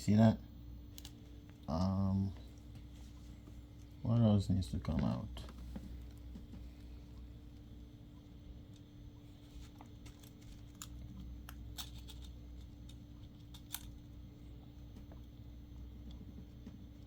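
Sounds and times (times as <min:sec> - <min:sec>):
low hum: 0:00.0 - 0:17.0.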